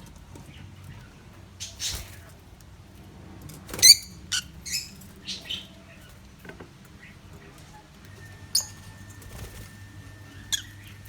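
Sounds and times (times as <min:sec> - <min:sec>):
parrots chirping and squawking: 0:01.6 - 0:02.2, 0:03.8 - 0:05.7, 0:08.3 - 0:09.2, 0:10.3 - 0:11.0.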